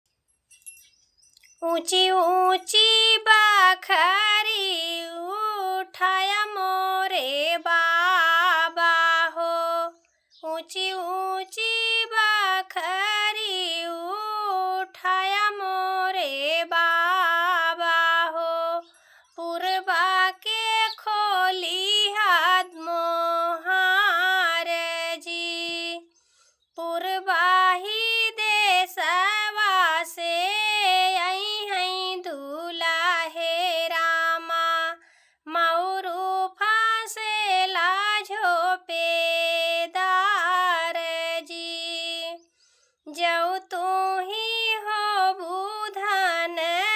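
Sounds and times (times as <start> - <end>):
woman singing folk song: 1.5 - 46.9.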